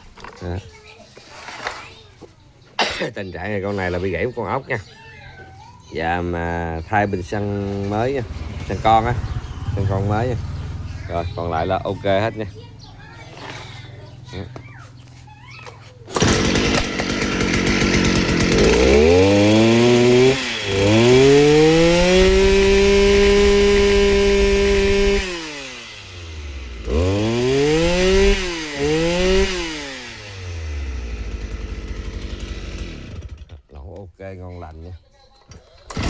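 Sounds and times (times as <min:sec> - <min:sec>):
brush cutter engine revving: 0:07.2 - 0:12.4, 0:16.1 - 0:33.7.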